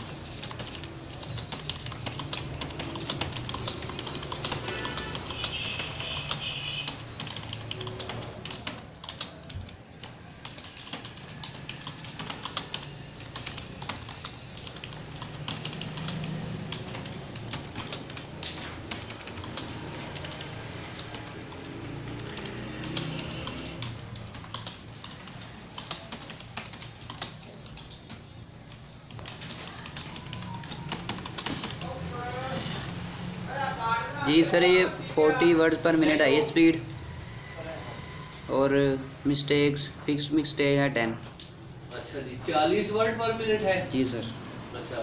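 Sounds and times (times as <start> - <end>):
typing on computer keyboard: 0.0 - 32.8, 36.8 - 37.5, 38.2 - 38.5, 41.2 - 42.0, 42.8 - 43.9.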